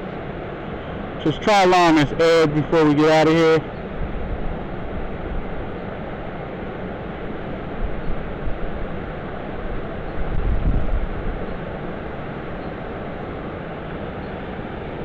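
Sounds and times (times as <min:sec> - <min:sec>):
wind buffeting microphone: 0:09.7 - 0:11.5.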